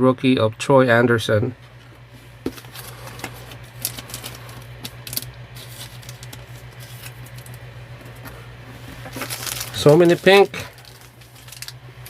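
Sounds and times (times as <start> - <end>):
low electrical hum: 0.0 - 12.0
cards tapping and rustling: 2.4 - 11.8.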